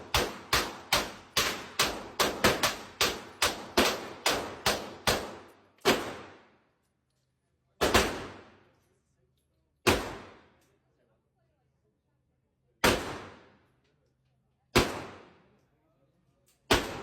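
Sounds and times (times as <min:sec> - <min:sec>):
gunshots with long echo: 0:00.0 - 0:06.6, 0:07.8 - 0:08.6, 0:09.9 - 0:10.6, 0:12.8 - 0:13.6, 0:14.8 - 0:15.4, 0:16.7 - 0:17.0.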